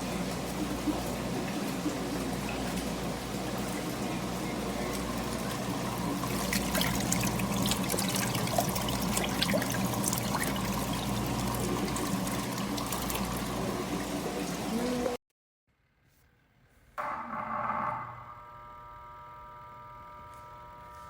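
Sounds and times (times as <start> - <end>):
washing machine motor hum: 0.0 - 15.2, 17.1 - 21.0
water splashing and trickling: 0.0 - 15.2.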